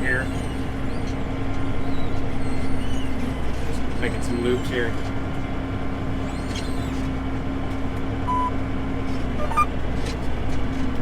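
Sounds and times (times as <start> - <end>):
tractor engine drone: 0.0 - 11.0
electronic beep: 8.3 - 8.6, 9.4 - 9.7.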